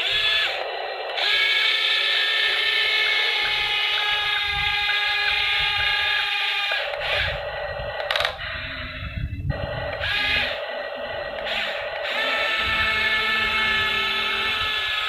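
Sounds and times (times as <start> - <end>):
toy electric motors whining: 0.0 - 15.0.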